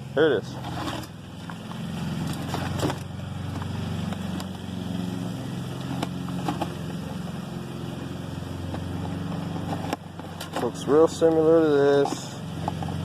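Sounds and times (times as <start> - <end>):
vehicle engine idling: 0.0 - 13.0
knocks and clicks of handling: 8.7 - 13.0.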